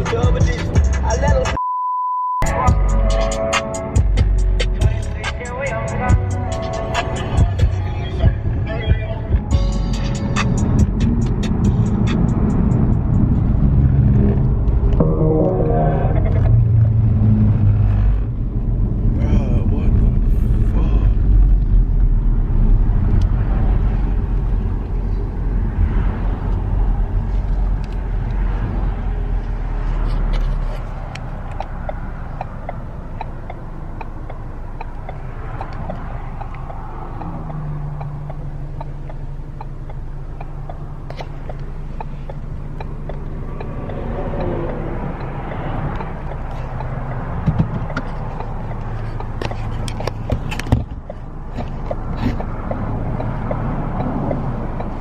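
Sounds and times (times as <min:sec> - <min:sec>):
engine and road rumble: 0:00.0 - 0:01.6, 0:02.4 - 0:55.0.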